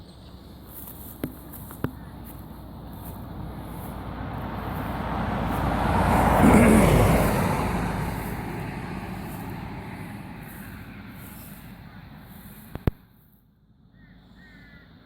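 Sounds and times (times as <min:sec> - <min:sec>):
car passing by: 0:02.3 - 0:12.9.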